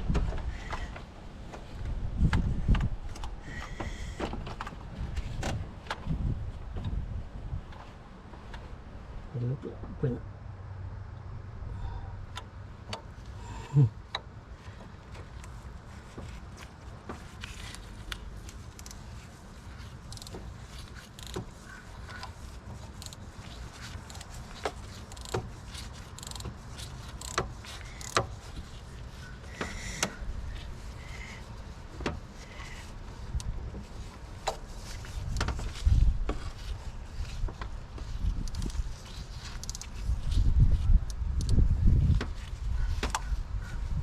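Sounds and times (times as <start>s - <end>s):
metallic clicks of hand tools: 23.9s - 28.3s.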